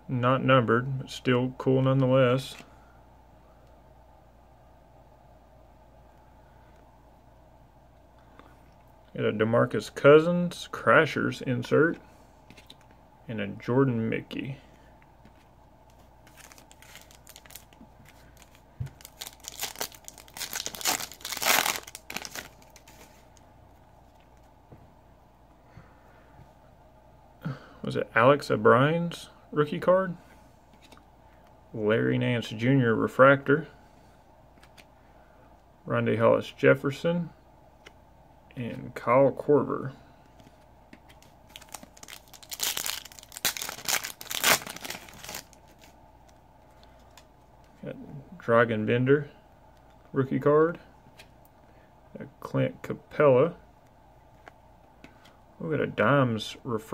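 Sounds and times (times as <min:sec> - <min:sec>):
plastic foil wrapper tearing: 0:16.3 - 0:17.8, 0:18.4 - 0:23.1, 0:41.5 - 0:45.9.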